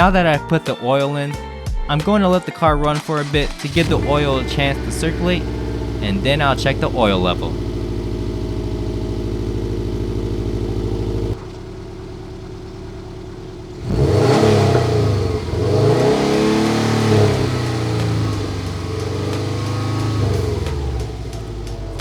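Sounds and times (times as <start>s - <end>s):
car engine idling and revving: 3.6s - 22.0s.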